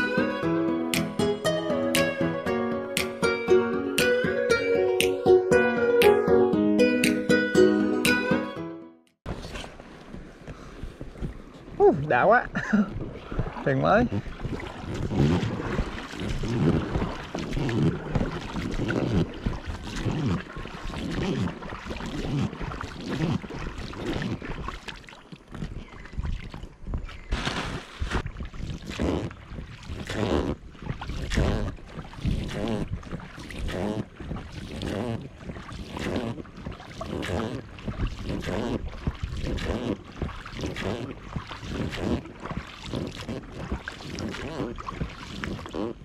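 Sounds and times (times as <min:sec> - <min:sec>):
oars splashing in water: 0:09.3 - 0:46.0.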